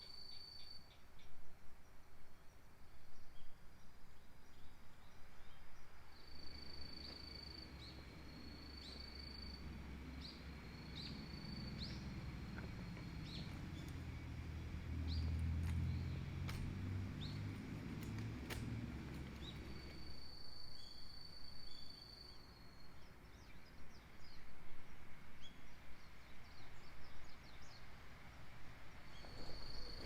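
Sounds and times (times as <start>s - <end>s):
birds chirping: 4.5s - 21.0s, 28.9s - 30.0s
low engine rumble: 6.2s - 20.4s.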